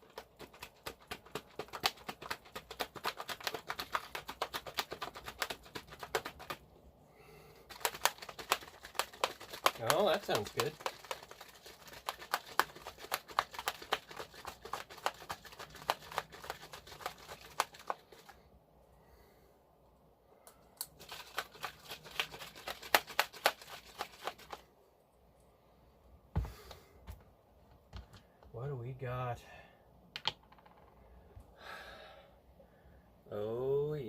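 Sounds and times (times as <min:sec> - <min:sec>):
cream sloshing in shaken container: 0:00.0 - 0:06.6, 0:07.7 - 0:18.4, 0:20.9 - 0:24.6.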